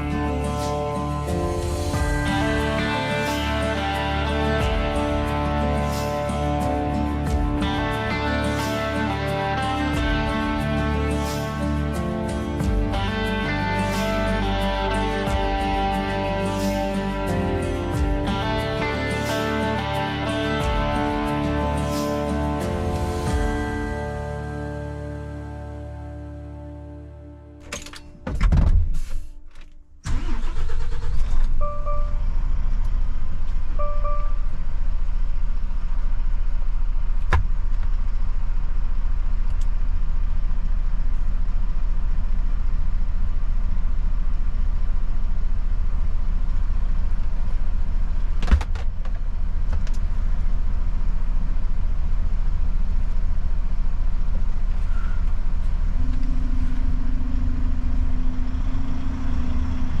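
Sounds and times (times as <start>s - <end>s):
truck engine and road rumble: 0.0s - 60.0s
short beeps: 31.6s - 32.5s, 33.8s - 34.7s
steady low hum: 32.0s - 60.0s.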